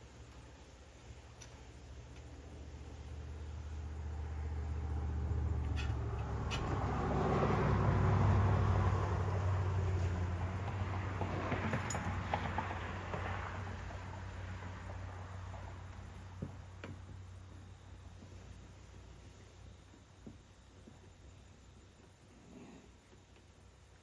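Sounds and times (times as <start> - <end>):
motor vehicle passing by: 2.4 - 16.0.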